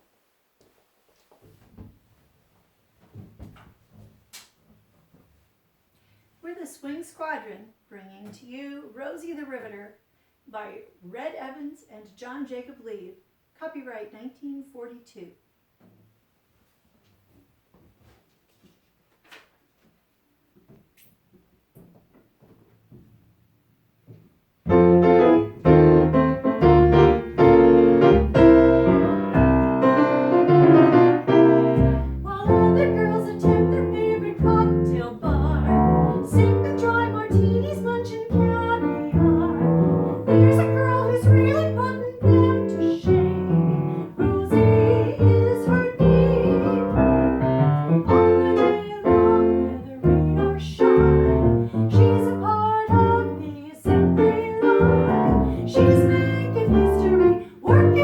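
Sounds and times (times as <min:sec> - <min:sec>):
piano and bass swing music: 0:24.7 - 0:58.0.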